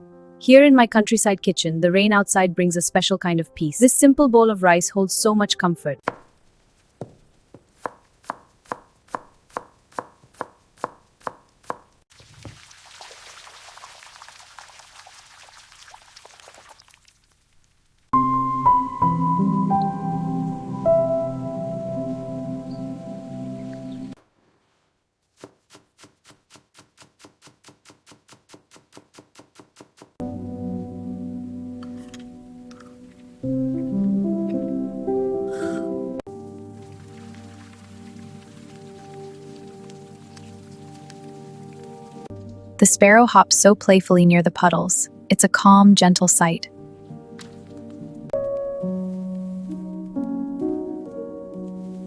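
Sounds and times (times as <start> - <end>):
calm ambient music: 0.0 - 1.0, 18.2 - 24.2, 30.2 - 44.2, 46.6 - 52.0
knife chopping on cutting board: 7.0 - 11.9
knife chopping vegetables: 7.0 - 11.9, 25.4 - 30.2.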